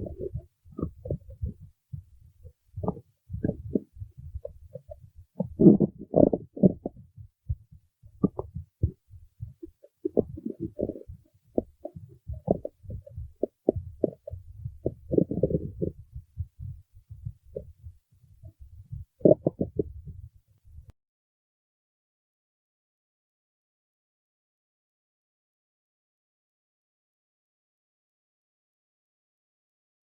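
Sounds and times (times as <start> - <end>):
stomach growling: 0.0 - 1.7, 2.4 - 7.6, 8.2 - 16.8, 18.4 - 20.9.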